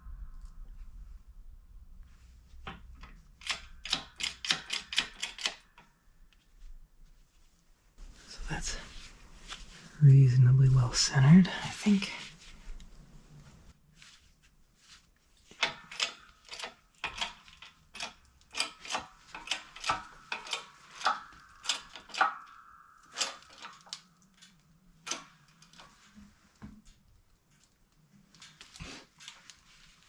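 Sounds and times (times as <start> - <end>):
ratchet clicking: 3.4 - 5.6.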